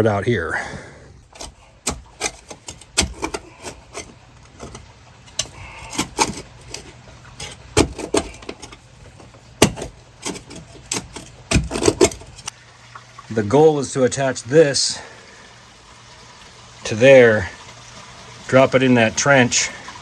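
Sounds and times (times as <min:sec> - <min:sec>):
steady low hum: 0:01.1 - 0:15.5
shovel digging wet ground: 0:01.3 - 0:12.5.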